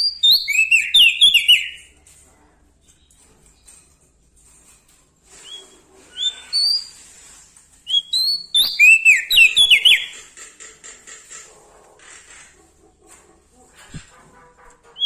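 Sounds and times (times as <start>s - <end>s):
songbird whistling: 0.0s - 1.8s, 5.4s - 6.9s, 7.9s - 10.2s.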